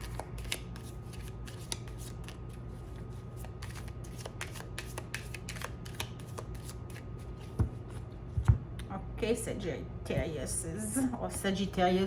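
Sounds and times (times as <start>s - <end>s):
cards being shuffled by hand: 0.0s - 8.1s.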